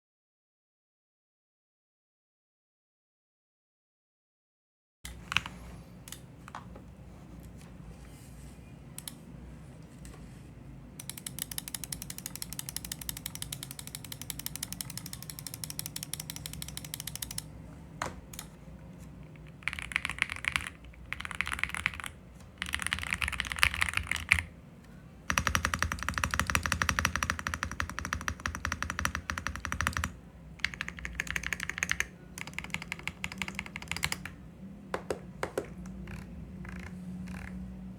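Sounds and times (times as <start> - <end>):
mechanical keyboard typing: 11.0 - 17.5, 19.3 - 24.5, 25.3 - 34.4, 35.0 - 37.6.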